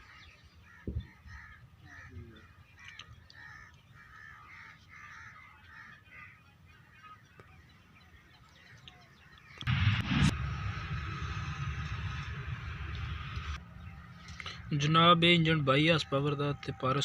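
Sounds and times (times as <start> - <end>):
crows cawing: 0.0 - 7.2
loud noise: 9.7 - 13.6
faint low rumble: 9.7 - 14.7.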